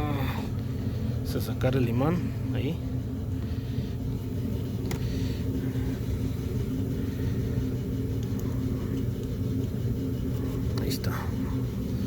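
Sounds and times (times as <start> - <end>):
faint hum: 0.0 - 12.0
low mechanical rumble: 0.0 - 12.0.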